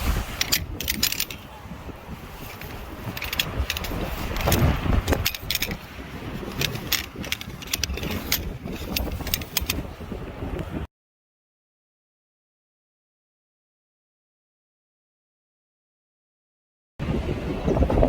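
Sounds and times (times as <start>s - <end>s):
wind buffeting microphone: 0.0s - 10.9s, 17.0s - 18.0s
sharp clicks and light rattles: 0.4s - 1.4s, 2.4s - 5.8s, 6.5s - 9.8s.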